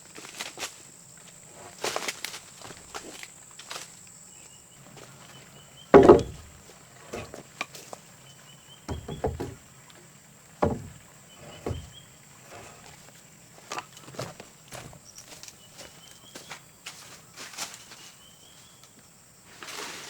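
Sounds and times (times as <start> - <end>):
thumps and knocks: 6.0 - 7.4, 8.9 - 9.6, 10.6 - 12.0.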